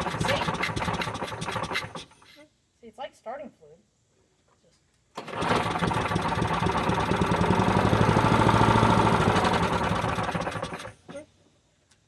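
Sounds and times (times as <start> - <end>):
lawn mower engine running: 0.0 - 2.3, 5.2 - 11.2.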